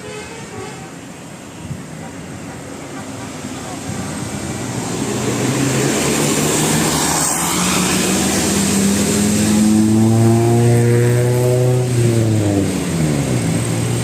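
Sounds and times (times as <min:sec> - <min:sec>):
traffic noise: 0:00.0 - 0:14.0
bus engine revving: 0:03.0 - 0:14.0.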